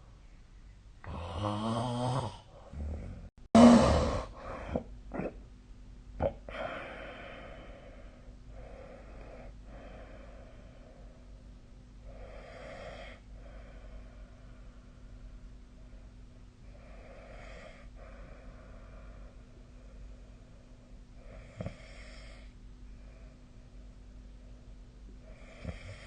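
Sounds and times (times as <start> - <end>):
faint steady hum: 0.0 - 26.0
person snoring: 1.0 - 4.9, 25.3 - 26.0.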